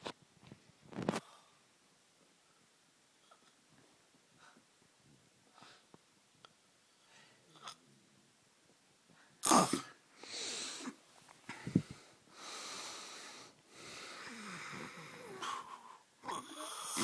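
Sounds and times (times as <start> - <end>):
man snoring heavily: 14.2 - 15.5, 16.3 - 17.0.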